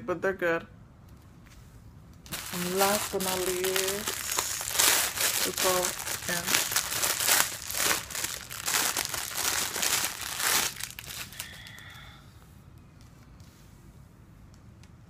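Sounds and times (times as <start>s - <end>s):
plastic bag crinkling: 2.3s - 11.9s.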